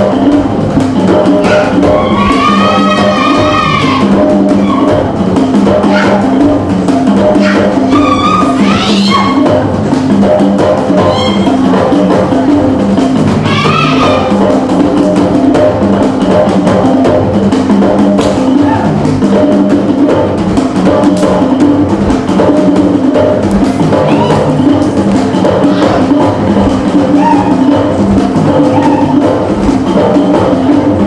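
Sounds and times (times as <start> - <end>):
drums and percussion beat: 0.0 - 31.0
wavering call: 7.4 - 9.5, 11.0 - 11.6.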